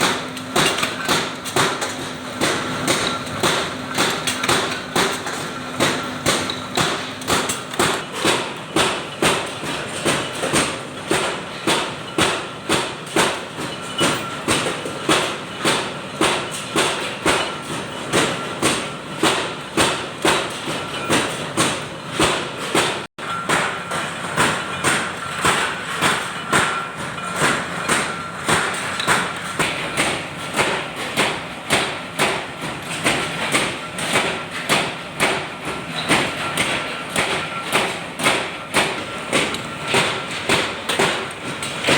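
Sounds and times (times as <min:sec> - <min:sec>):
forging hammer striking metal: 0:00.0 - 0:32.5.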